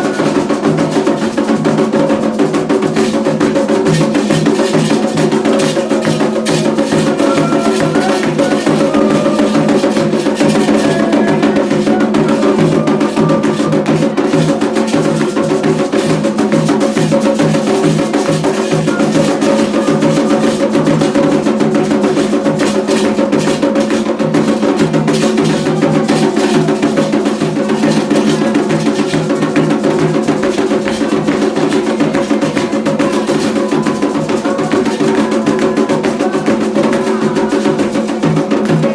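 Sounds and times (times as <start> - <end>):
hand drums and percussion: 0.0 - 38.9.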